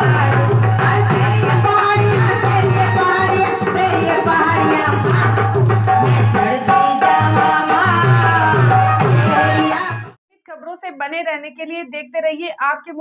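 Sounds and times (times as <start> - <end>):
shaker percussion: 0.0 - 10.2.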